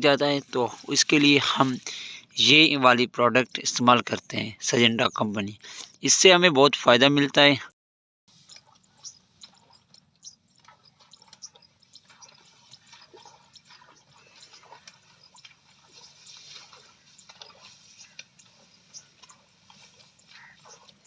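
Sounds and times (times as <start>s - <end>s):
water dripping and splashing: 8.3s - 21.0s.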